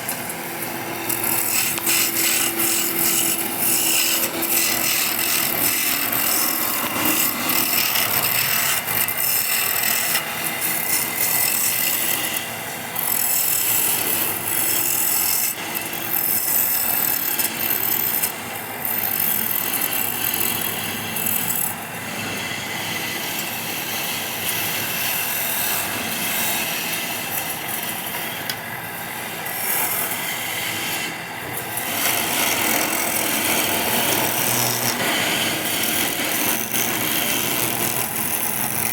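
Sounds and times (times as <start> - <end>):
tool scraping wood: 0.0 - 28.3, 29.5 - 38.9.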